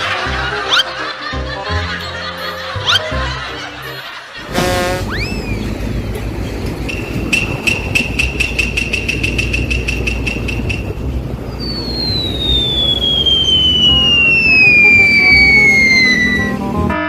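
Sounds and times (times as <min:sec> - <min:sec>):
high whistle sliding down: 0:04.6 - 0:05.7, 0:11.6 - 0:16.7.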